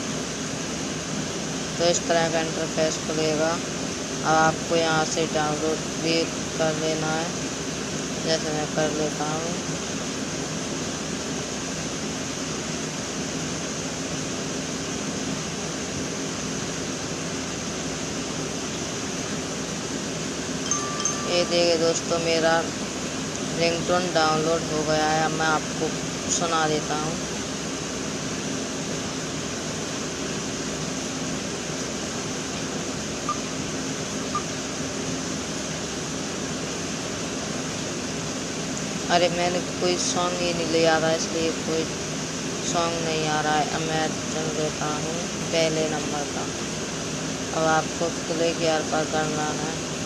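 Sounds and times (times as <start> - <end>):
fan-like hiss and hum: 0.0 - 50.0
low hum: 15.3 - 36.0.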